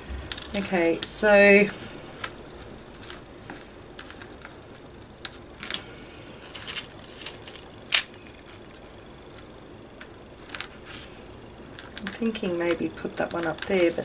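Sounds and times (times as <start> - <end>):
beads and wire clicking: 11.7 - 14.0.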